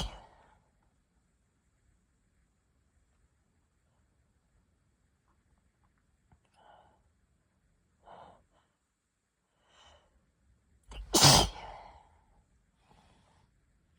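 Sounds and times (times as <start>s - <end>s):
person sneezing: 0.0s - 0.3s, 10.9s - 11.8s
person breathing quietly: 6.5s - 7.2s, 8.0s - 8.8s, 9.5s - 10.3s, 11.5s - 13.6s.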